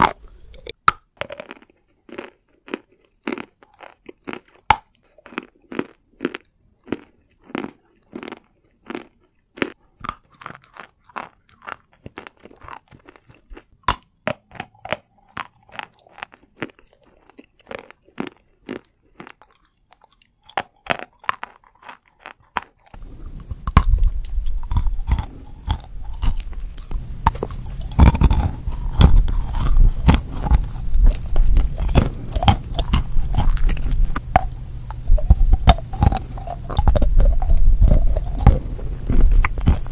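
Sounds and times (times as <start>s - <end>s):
chalk crunching and chewing: 0.0s - 39.9s
deep low rumble: 23.0s - 39.9s.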